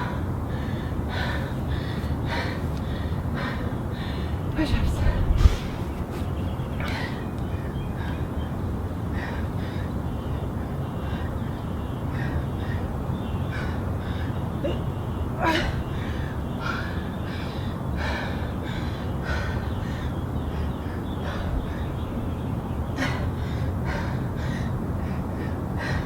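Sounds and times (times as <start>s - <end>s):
woman panting heavily: 0.0s - 26.0s
low rumble: 4.6s - 6.2s.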